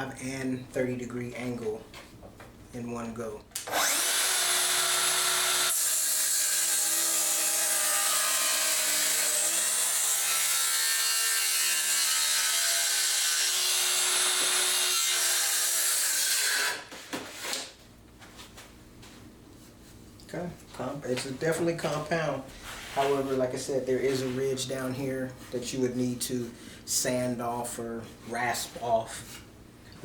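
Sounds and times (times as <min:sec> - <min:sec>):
track saw cutting wood: 0:03.6 - 0:16.8.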